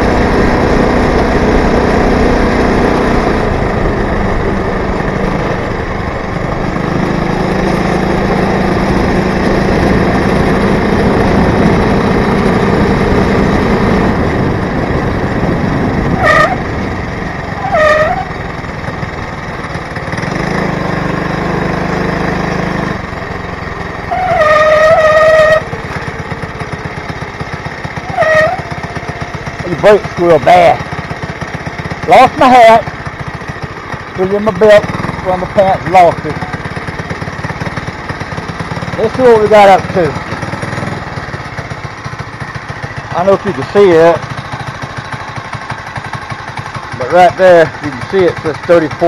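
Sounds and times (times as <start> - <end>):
two-stroke engine running: 0.0 - 49.0
brake squeals: 15.9 - 18.6, 23.6 - 30.9.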